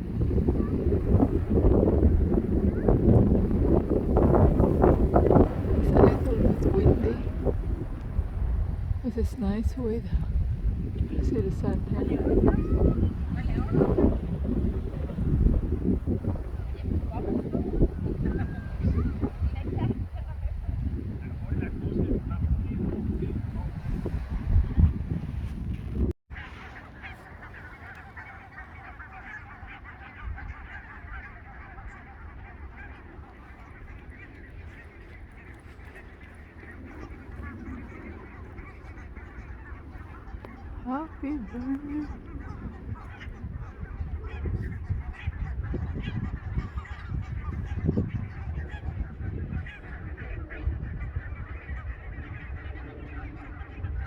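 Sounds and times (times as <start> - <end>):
flock of birds chattering: 0.0 - 24.9, 26.4 - 54.0
steady low rumble: 0.0 - 26.2.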